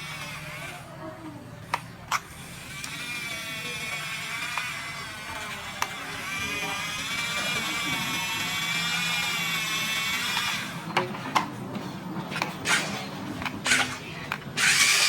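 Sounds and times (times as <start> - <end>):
small electric motor whining: 0.0 - 1.0, 1.7 - 10.8, 13.6 - 15.0.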